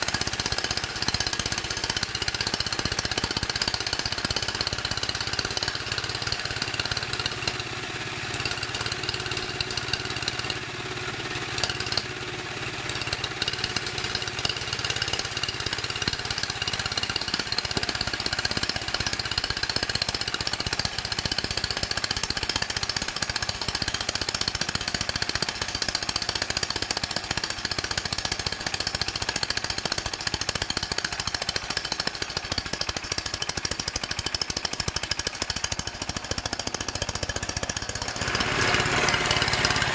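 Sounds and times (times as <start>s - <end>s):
engine chugging: 0.0s - 39.9s
high saw whine: 38.2s - 39.9s.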